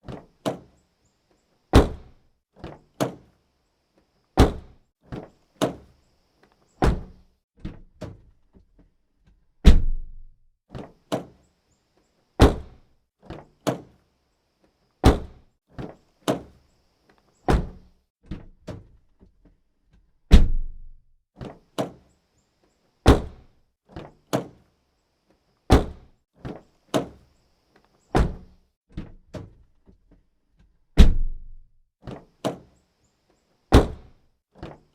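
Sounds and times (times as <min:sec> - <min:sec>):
car door shutting: 0:06.8 - 0:07.1, 0:17.5 - 0:17.8, 0:28.2 - 0:28.5.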